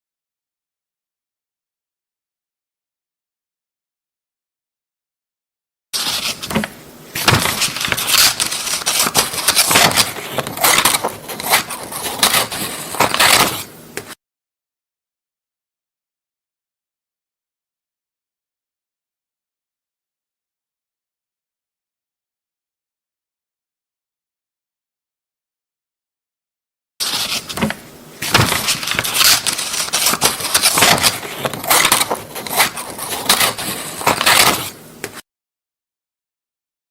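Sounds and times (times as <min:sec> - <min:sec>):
scissors cutting paper: 0:06.0 - 0:13.7, 0:27.0 - 0:35.2.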